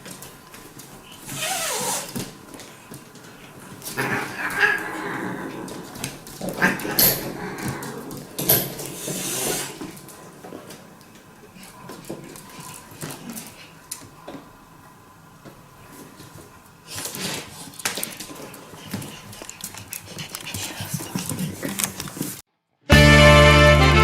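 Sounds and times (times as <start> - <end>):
animal vocalizing in noisy bursts: 3.6 - 10.6.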